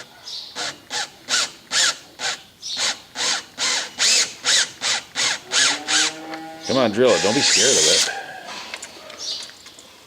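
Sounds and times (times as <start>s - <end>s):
hand drill in short bursts: 0.6s - 6.1s, 7.1s - 8.2s.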